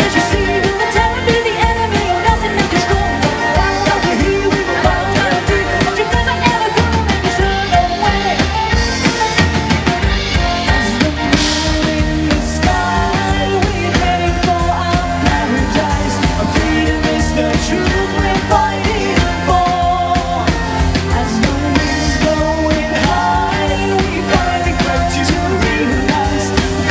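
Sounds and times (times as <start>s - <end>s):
drum beat: 0.0s - 26.9s
person singing melody: 0.0s - 26.9s.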